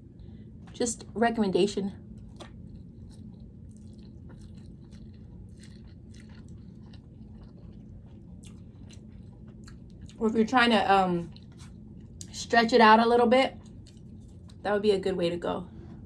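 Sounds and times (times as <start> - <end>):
steady low hum: 0.0 - 16.0
person chewing food: 2.1 - 10.2, 11.2 - 12.3, 13.6 - 14.6.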